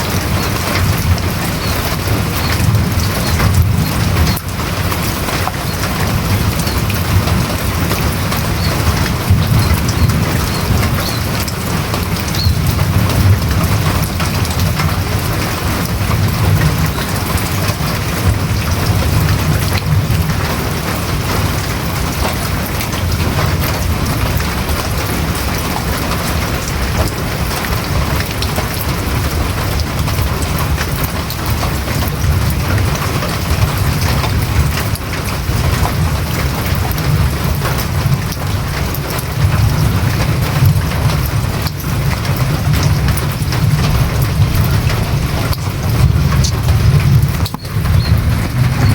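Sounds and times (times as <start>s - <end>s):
rain on a roof: 0.0s - 48.9s
low rumble: 43.7s - 48.9s.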